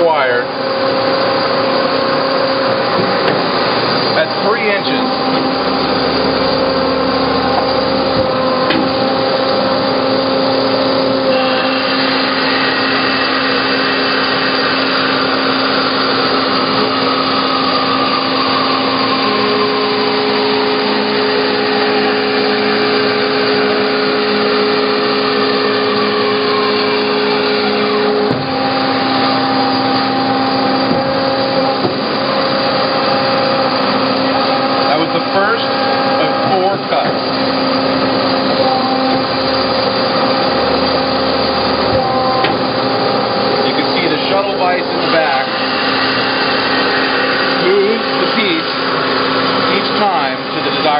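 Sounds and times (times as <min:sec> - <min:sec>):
bandsaw machine hum: 0:00.0 - 0:50.9
blade whine falling in pitch: 0:04.0 - 0:32.5.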